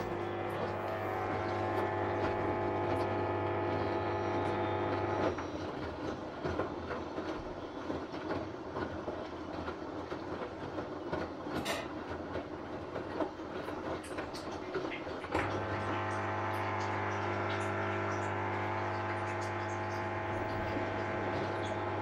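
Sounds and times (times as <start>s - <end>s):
washing machine pump buzzing: 0.0s - 22.0s.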